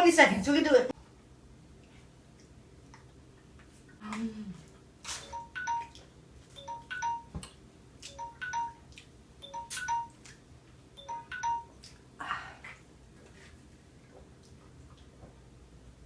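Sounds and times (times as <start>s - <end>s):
phone timer alarm chimes: 5.2s - 6.0s, 6.6s - 7.4s, 8.1s - 10.2s, 11.0s - 11.8s.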